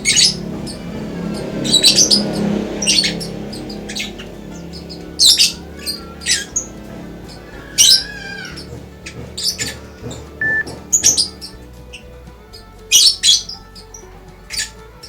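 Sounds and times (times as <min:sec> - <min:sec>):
bird squawking: 0:00.0 - 0:11.6
background music: 0:00.0 - 0:15.0.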